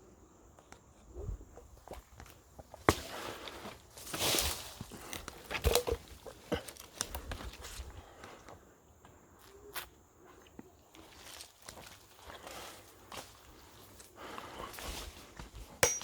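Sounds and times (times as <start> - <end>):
rustling through dry vegetation: 1.7 - 8.3, 11.0 - 15.8.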